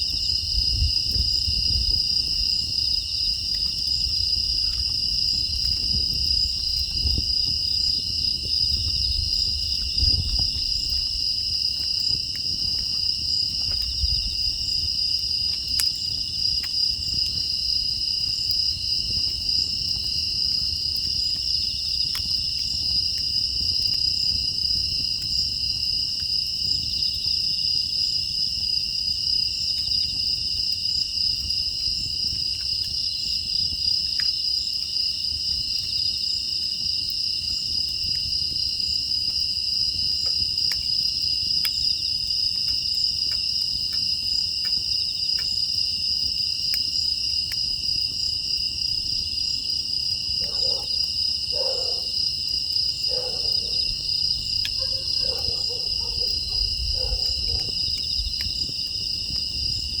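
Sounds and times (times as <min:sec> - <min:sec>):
crickets chirping: 0:00.0 - 1:00.0
wood fire crackling: 0:00.0 - 1:00.0
dog barking faintly: 0:50.4 - 0:52.2, 0:53.1 - 0:54.0, 0:54.8 - 0:57.8.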